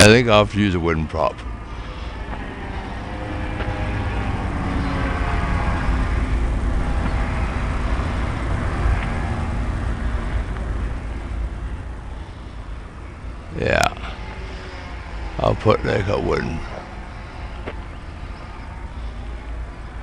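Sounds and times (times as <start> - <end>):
low buffeting of prop wash: 1.4 - 15.9
electric motor driving propeller: 1.4 - 20.0.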